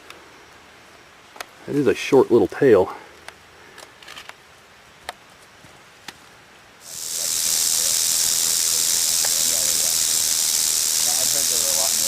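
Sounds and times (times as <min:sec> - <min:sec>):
rattlesnake rattling: 0:06.8 - 0:12.0.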